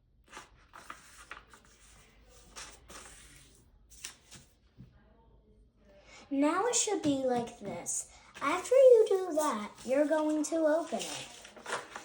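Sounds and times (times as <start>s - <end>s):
paper rustling and folding: 0.2s - 4.6s, 8.4s - 12.0s.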